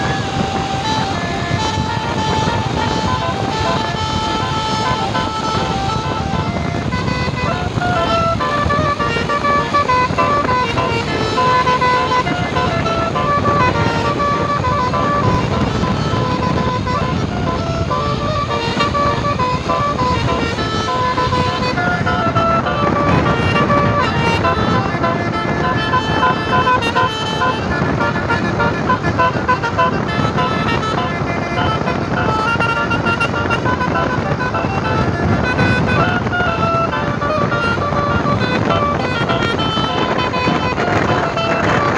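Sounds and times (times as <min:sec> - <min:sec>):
noisy background: 0:00.0 - 0:37.0
multi-tone bus horn tune: 0:00.0 - 0:41.9.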